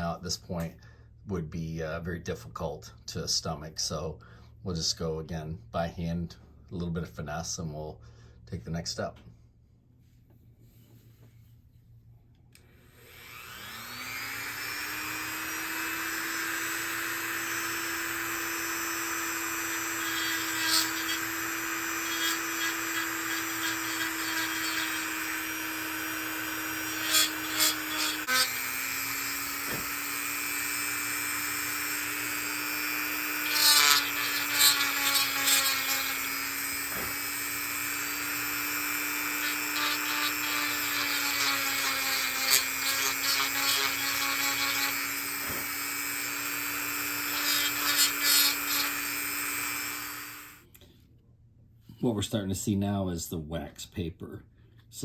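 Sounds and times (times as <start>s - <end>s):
rotary tool whining: 12.6s - 50.6s
bit grinding into wood: 13.1s - 50.5s.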